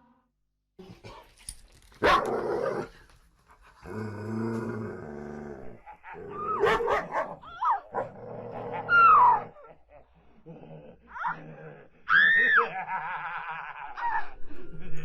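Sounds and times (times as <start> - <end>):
dog barking and yelping: 2.0 - 2.9, 6.3 - 9.7
dog growling: 3.7 - 7.2, 7.9 - 9.8.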